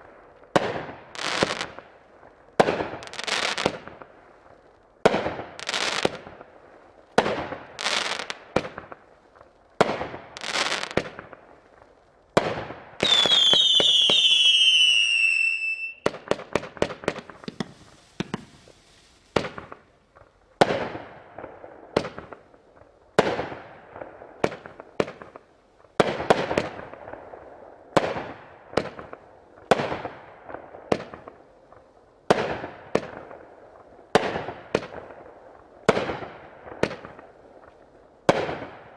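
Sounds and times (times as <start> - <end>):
firework shots and bursts: 0.5 - 1.9, 2.6 - 4.1, 5.1 - 9.1, 12.4 - 19.9, 20.6 - 22.4, 38.2 - 38.9
firework whistles: 13.0 - 16.0.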